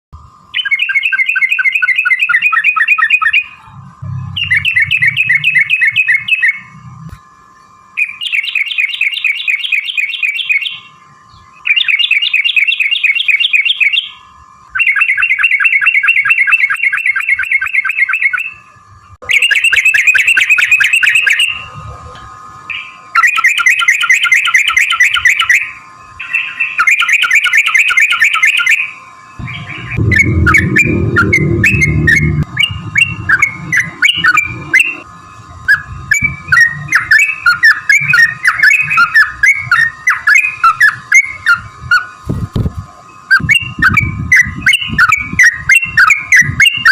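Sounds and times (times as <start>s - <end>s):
bulbul chattering song: 0.5s - 6.8s, 8.0s - 14.2s, 22.7s - 42.1s.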